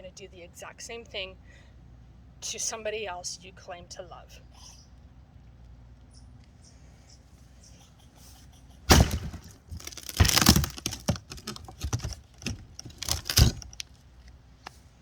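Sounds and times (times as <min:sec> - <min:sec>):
knocking: 0:08.9 - 0:13.8
sign cracking apart: 0:08.9 - 0:14.0.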